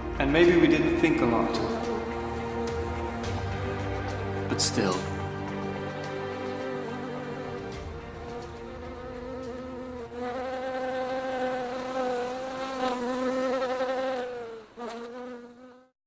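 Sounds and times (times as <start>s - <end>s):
soft music: 0.0s - 14.4s
bee buzzing: 1.6s - 15.9s.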